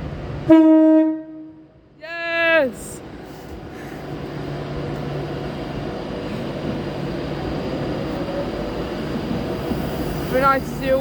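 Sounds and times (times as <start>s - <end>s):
train wheels rumbling: 2.6s - 11.0s.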